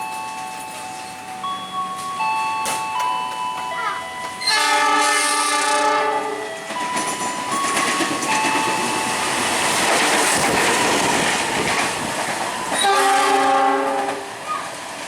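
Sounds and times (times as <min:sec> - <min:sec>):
train wheels clattering on rails: 0:00.0 - 0:15.0
train horn blast: 0:04.4 - 0:06.4, 0:12.8 - 0:14.4.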